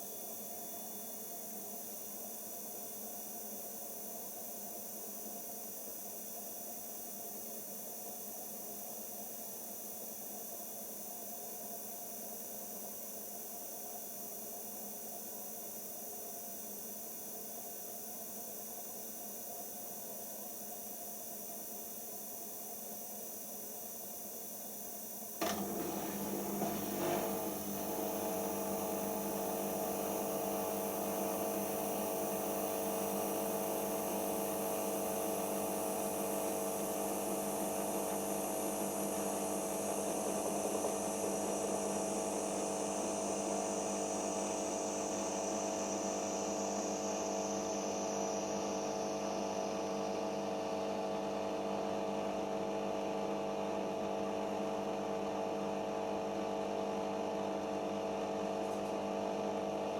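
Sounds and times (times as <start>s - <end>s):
washing machine spinning: 25.4s - 46.0s.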